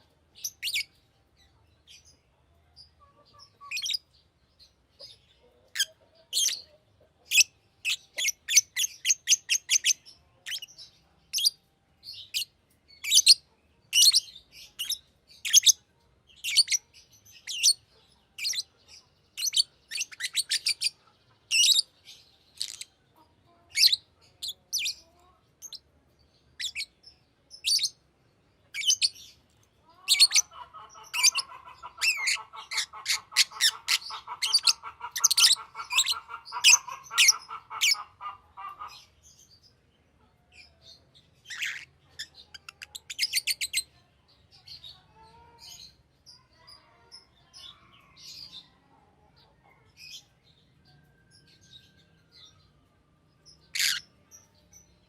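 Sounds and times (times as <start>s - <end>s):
low continuous chattering: 0.0s - 55.0s
lovebird chirping: 0.3s - 1.0s, 2.8s - 4.3s, 5.0s - 18.7s, 19.3s - 23.0s, 26.5s - 28.0s, 28.7s - 29.4s, 30.0s - 39.7s, 40.6s - 43.9s, 53.4s - 55.0s.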